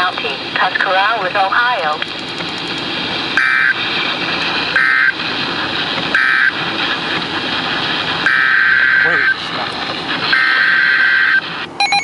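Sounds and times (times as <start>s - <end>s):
radio hiss: 0.0s - 11.7s
two-tone buzzing data squawks: 3.4s - 3.8s, 4.8s - 5.2s, 6.2s - 6.5s, 8.3s - 9.4s, 10.3s - 12.0s.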